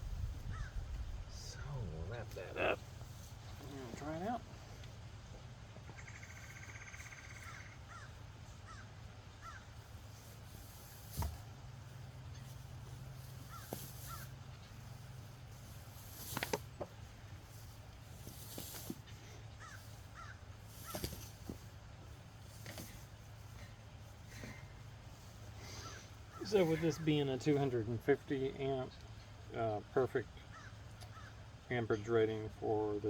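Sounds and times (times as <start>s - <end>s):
steady low hum: 0.0s - 33.0s
faint bird calls: 0.4s - 1.8s, 5.8s - 11.2s, 12.2s - 16.6s, 18.2s - 22.1s, 22.8s - 26.9s, 30.4s - 31.6s.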